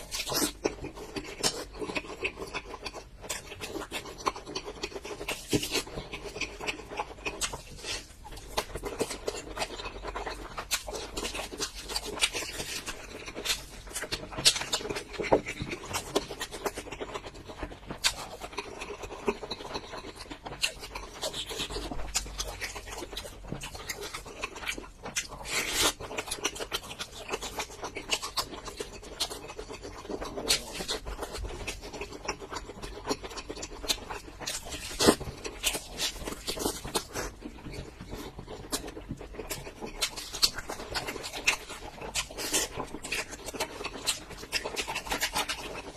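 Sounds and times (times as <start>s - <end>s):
person chewing crunchy food: 0.0s - 45.9s
wet mouth sounds: 0.0s - 45.9s.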